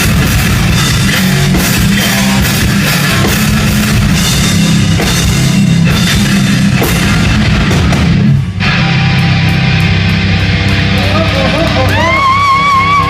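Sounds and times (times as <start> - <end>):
heavy rock band playing: 0.0 - 13.0.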